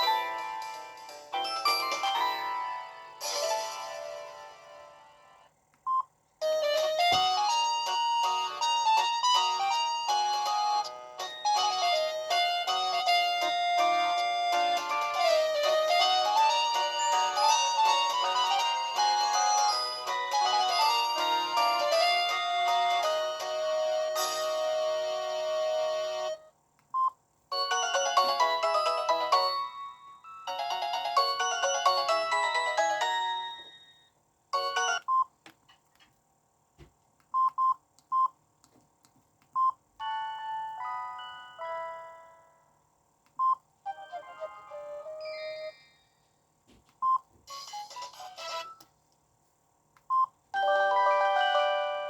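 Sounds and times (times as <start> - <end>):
phone ringtone melodies: 0.0 - 3.4, 6.4 - 26.4, 27.5 - 35.1, 40.0 - 42.6, 43.9 - 46.3, 50.6 - 52.0.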